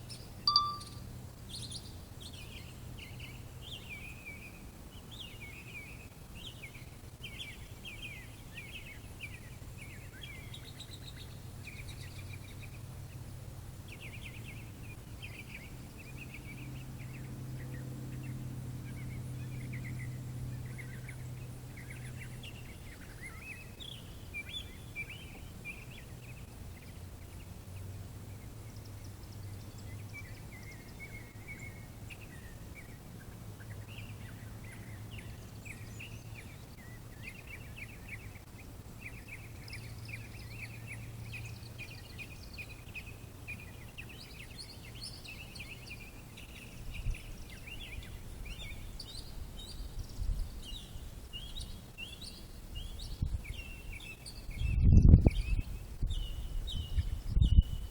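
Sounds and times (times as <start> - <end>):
low steady hum: 0.0 - 5.2
small birds chirping: 0.0 - 57.9.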